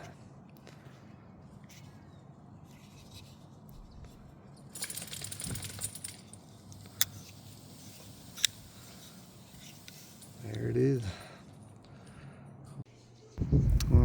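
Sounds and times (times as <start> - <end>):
metallic jingling and rustling: 4.5 - 6.9.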